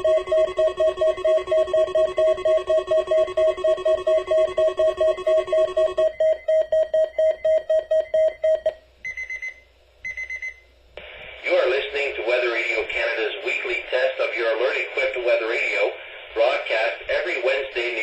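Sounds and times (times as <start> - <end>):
weather radio alarm beeping: 0.0 - 9.5.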